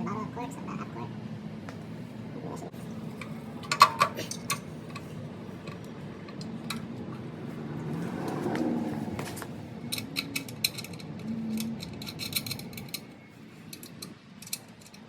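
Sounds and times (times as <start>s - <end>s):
metal parts and tools clinking: 2.9s - 7.3s, 9.2s - 15.0s.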